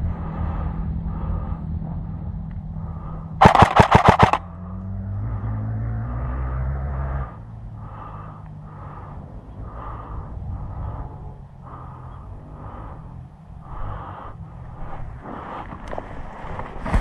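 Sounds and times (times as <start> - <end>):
low rumble: 0.0 - 16.4
airsoft gun full-auto burst: 3.4 - 4.4.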